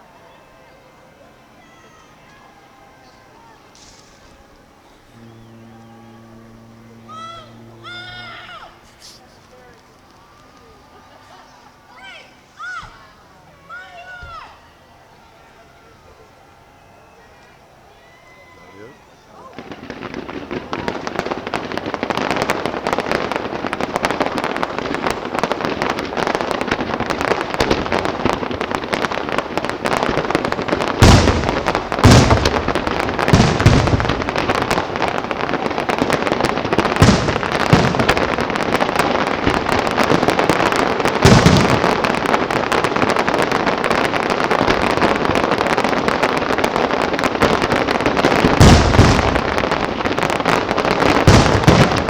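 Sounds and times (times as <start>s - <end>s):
fireworks crackling pops: 3.3s - 14.5s, 19.4s - 52.0s
fireworks booms: 19.5s - 52.0s.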